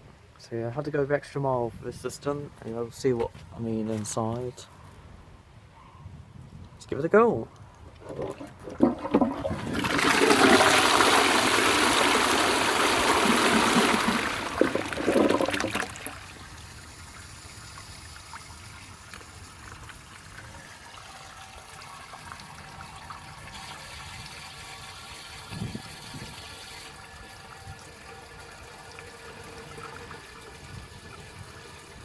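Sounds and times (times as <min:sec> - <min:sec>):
water gurgling: 0:08.0 - 0:32.0
water rushing down flush pipe: 0:08.0 - 0:32.0.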